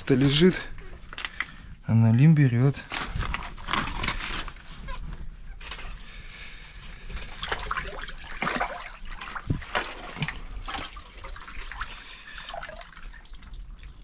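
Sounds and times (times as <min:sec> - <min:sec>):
water splashing and trickling: 0:07.0 - 0:14.0.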